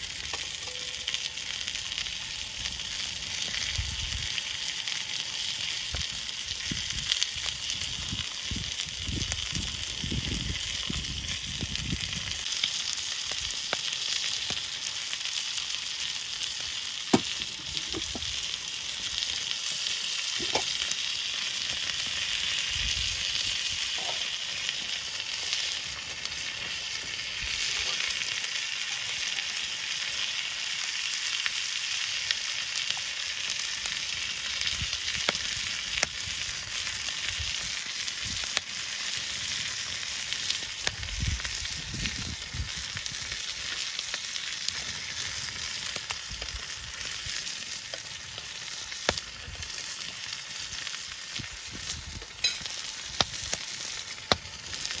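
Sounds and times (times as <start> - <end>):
food sizzling in a frying pan: 0.0 - 55.0.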